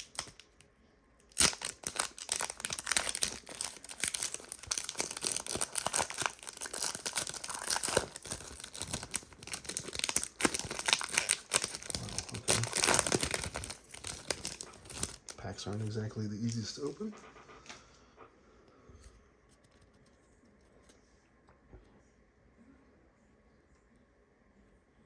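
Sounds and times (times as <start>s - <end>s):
foil wrapper tearing and crinkling: 0.0s - 0.6s, 1.2s - 16.6s.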